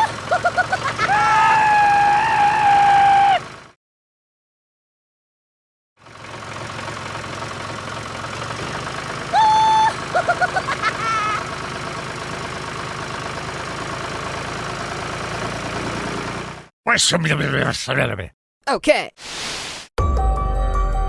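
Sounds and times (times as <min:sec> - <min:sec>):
vehicle engine idling: 0:00.0 - 0:03.8, 0:06.0 - 0:16.7.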